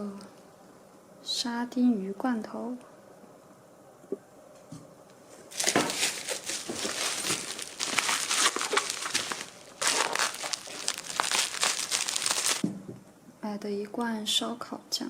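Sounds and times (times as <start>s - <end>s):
packaging crinkling and rustling: 5.5s - 12.6s.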